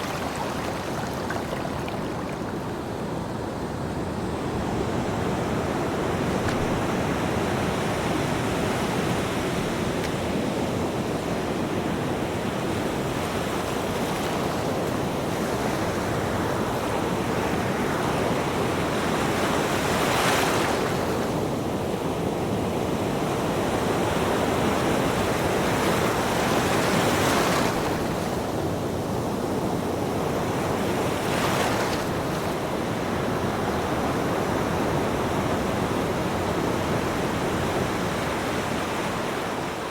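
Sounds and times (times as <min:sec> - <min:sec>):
ocean waves rushing: 0:00.0 - 0:03.3.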